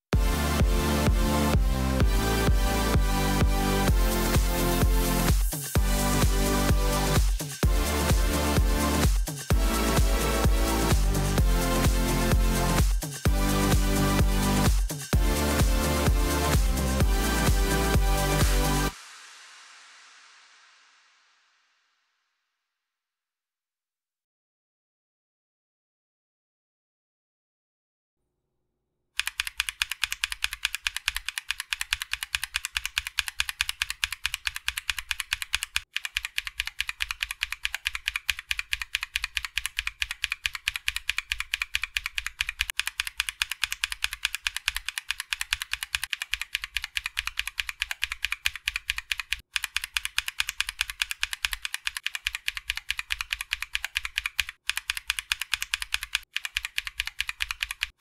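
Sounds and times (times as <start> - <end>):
fast mechanical keyboard typing: 4.3 - 18.9, 29.2 - 58.0.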